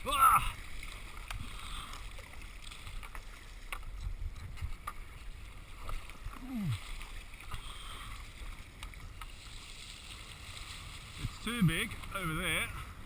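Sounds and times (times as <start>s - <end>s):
paddle clicks and slaps: 0.8s - 5.0s.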